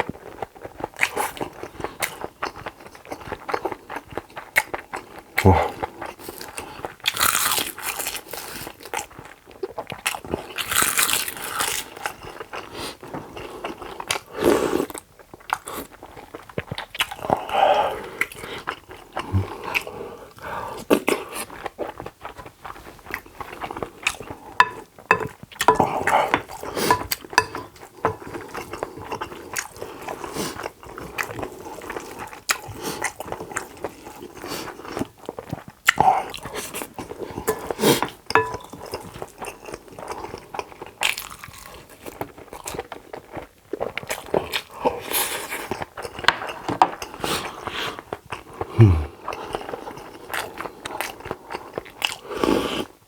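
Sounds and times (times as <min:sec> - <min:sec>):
person chewing food: 0:00.0 - 0:53.0.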